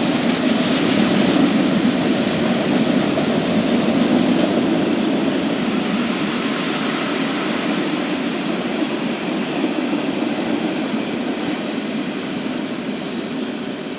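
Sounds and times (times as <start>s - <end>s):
freight train rumbling and rattling: 0.0s - 13.9s.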